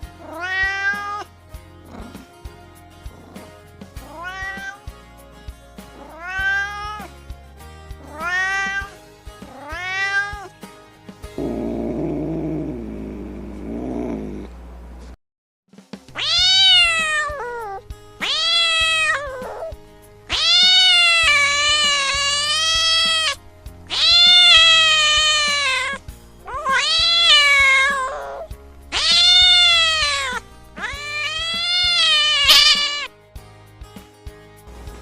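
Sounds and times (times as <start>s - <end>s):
cat meowing: 0.2s - 1.3s, 4.0s - 4.8s, 6.0s - 7.1s, 8.0s - 10.5s, 16.2s - 19.7s, 20.3s - 33.1s.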